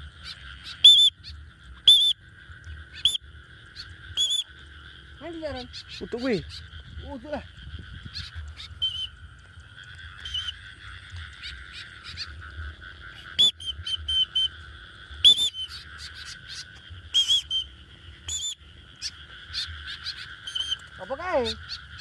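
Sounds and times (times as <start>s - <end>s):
high-pitched wildlife drone: 0.0s - 22.0s
sharp high chirping calls: 0.2s - 2.2s, 3.0s - 4.5s, 8.0s - 9.2s, 10.2s - 10.6s, 13.2s - 14.6s, 15.2s - 22.0s.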